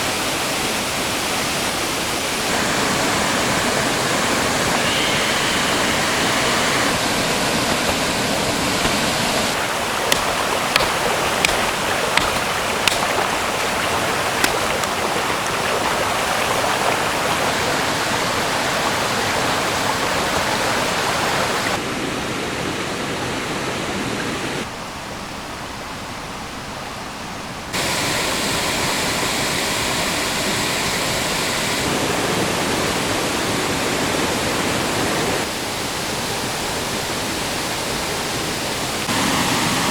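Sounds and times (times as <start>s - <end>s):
stream water rushing: 0.0s - 25.9s, 27.7s - 39.9s
sharp clicks: 10.1s - 13.5s.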